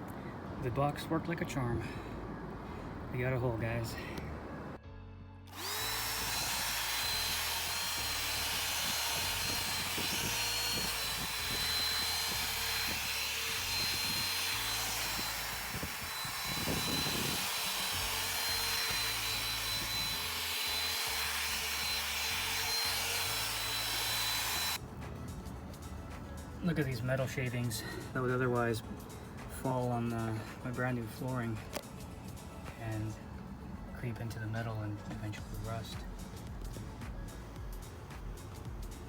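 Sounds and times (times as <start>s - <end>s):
power tool motor whining: 5.5s - 24.8s.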